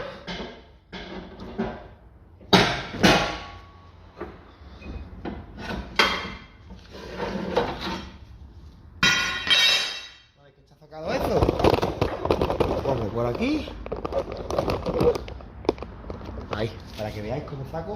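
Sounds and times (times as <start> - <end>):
rattling scrape: 6.7 - 8.2.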